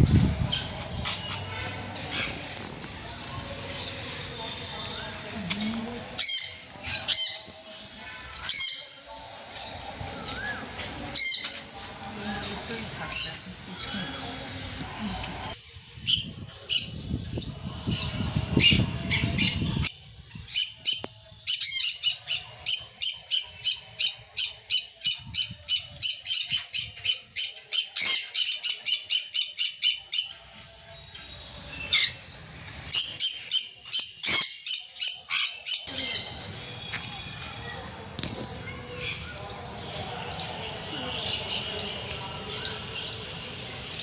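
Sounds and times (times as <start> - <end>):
birds squawking: 33.0 - 37.0.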